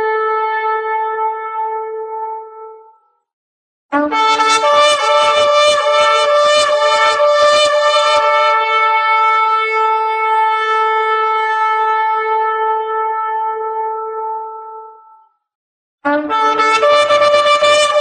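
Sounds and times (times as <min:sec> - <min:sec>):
ram's horn blown long note: 0:03.9 - 0:15.2, 0:16.1 - 0:18.0.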